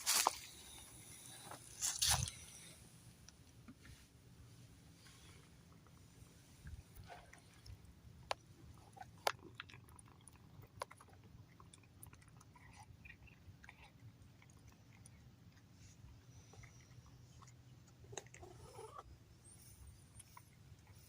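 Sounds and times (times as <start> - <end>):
cat chewing and crunching food: 4.5 - 21.0.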